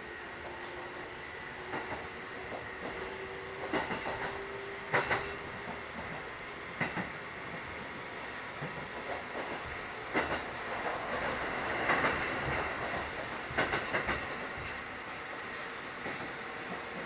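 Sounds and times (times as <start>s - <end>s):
train rumbling: 0.0s - 17.0s
wheels clacking over rail joints: 8.6s - 14.7s.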